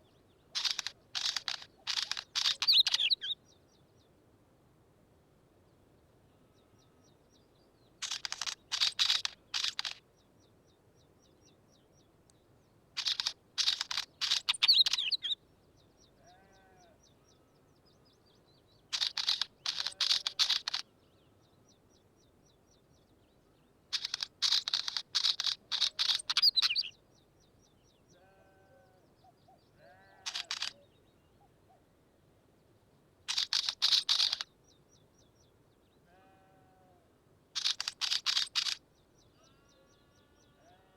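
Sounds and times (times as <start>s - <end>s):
faint lower bird calls: 0.0s - 4.1s, 6.3s - 31.9s, 32.6s - 40.9s
bird singing harsh notes: 0.6s - 3.4s, 13.0s - 15.4s, 24.0s - 27.0s.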